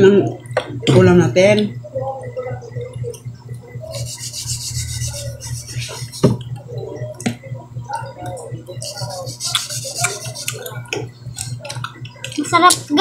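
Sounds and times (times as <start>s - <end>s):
eating clicks and scrapes: 7.9s - 13.0s.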